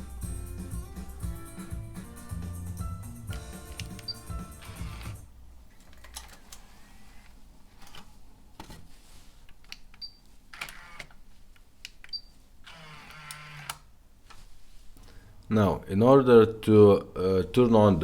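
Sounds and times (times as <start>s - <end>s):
buttons clicking: 3.3s - 5.2s.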